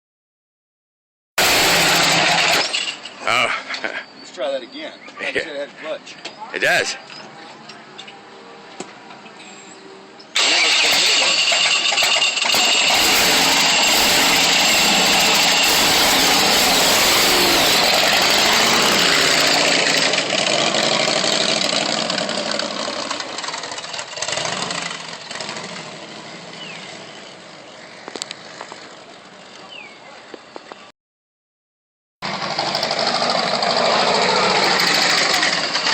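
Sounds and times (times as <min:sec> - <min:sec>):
motor scooter engine running: 0:10.4 - 0:26.0, 0:32.2 - 0:35.9.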